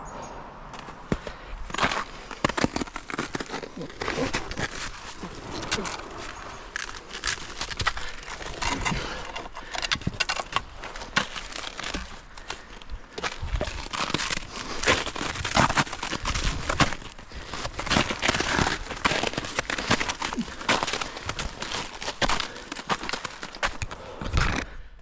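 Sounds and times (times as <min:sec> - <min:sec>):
footsteps crunching on frozen ground: 0:00.7 - 0:24.8.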